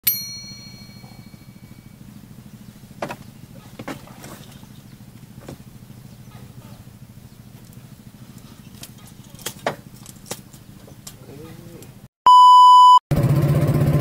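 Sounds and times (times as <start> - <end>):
bright ringing ding: 0.0 - 2.0
small engine humming: 0.1 - 12.0, 13.1 - 14.0
sharp knocks: 3.0 - 4.4.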